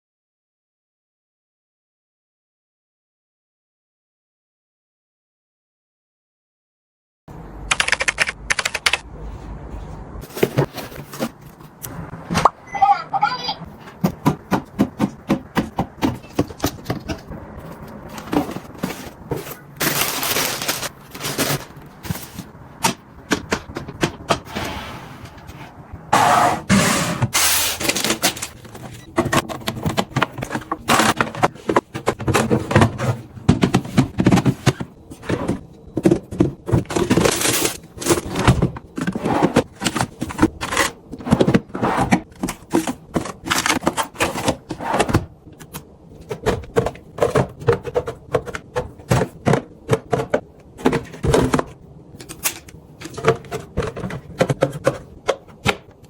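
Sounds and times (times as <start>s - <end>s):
plastic packaging handled: 16.3s - 22.6s.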